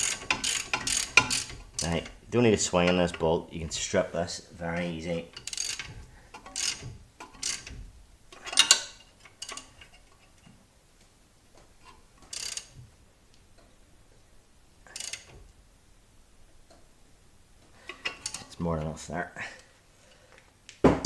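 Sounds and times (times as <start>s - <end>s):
spanner clicking and rasping: 0.0s - 3.9s, 4.8s - 10.0s, 11.8s - 12.8s, 14.9s - 15.5s, 17.8s - 18.6s.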